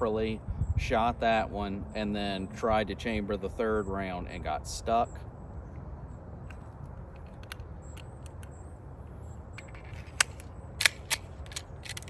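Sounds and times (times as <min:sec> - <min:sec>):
metallic clicks of pistol handling: 0:06.4 - 0:08.6, 0:09.6 - 0:12.0
pistol slide worked by hand: 0:09.6 - 0:12.0.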